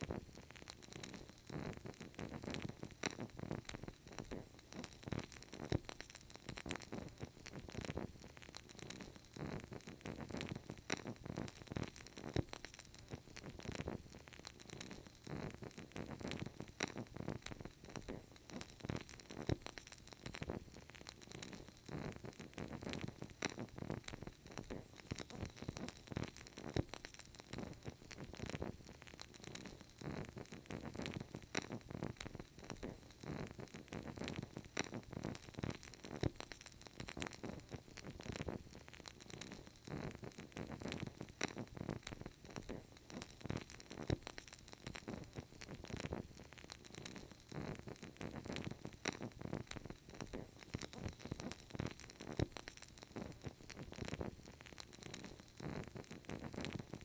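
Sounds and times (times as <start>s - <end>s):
candle crackling: 0.0s - 57.0s.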